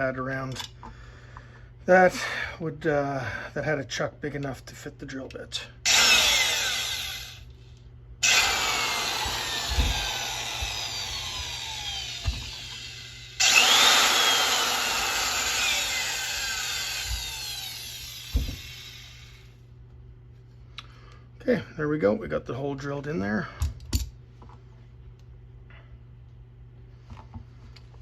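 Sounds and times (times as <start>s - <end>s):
power drill boring into plastic: 5.9s - 7.4s, 8.2s - 19.4s
low thumps: 8.3s - 12.9s.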